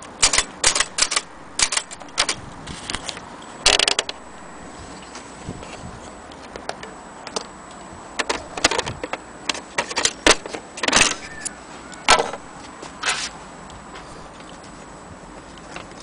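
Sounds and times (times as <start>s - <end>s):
typewriter key clacks: 0.2s - 2.4s
typewriter rattling clack: 0.2s - 2.4s.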